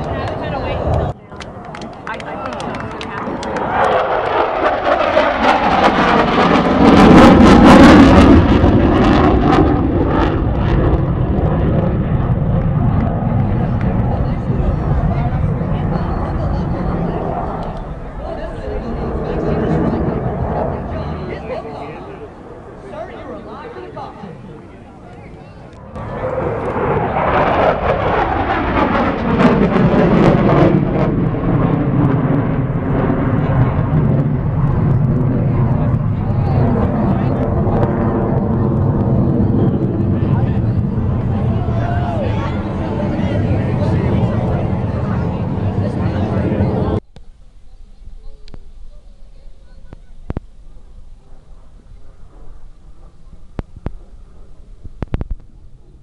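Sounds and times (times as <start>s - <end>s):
aircraft flying past: 0.0s - 47.0s, 49.7s - 56.0s.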